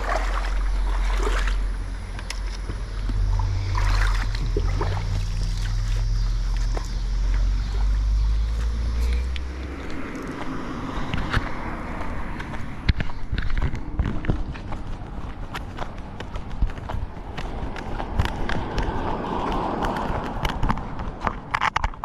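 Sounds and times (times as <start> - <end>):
rushing water: 0.0 - 8.8
vehicle engine rumble: 0.0 - 22.0
scattered clicks and taps: 12.4 - 22.0.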